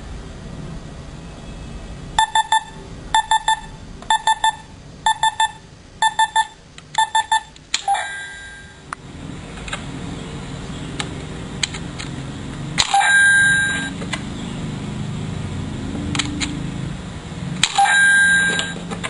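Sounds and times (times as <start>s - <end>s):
short high beeps: 2.2s - 8.8s, 12.9s - 14.0s, 17.7s - 18.8s
sharp click with rattle: 11.0s - 12.1s, 12.8s - 13.1s, 16.1s - 16.6s, 17.6s - 18.0s.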